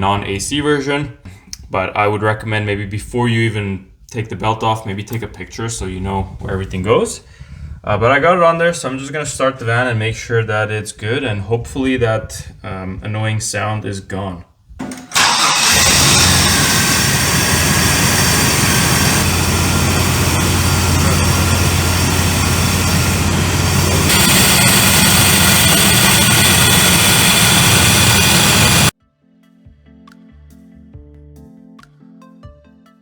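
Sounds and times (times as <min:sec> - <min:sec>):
van engine running: 0:15.2 - 0:28.9.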